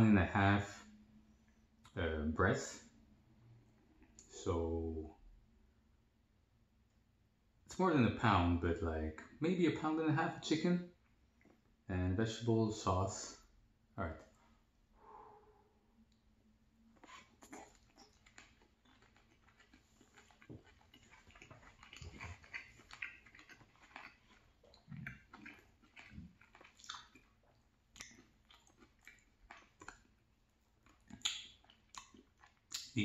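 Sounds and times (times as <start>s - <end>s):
person chewing food: 16.1s - 33.0s.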